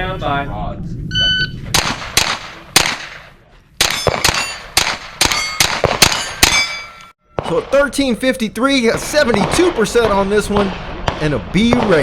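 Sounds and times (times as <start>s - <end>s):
rifle shots cracking: 1.7s - 8.1s, 9.0s - 12.0s
steel plates ringing: 5.3s - 7.2s.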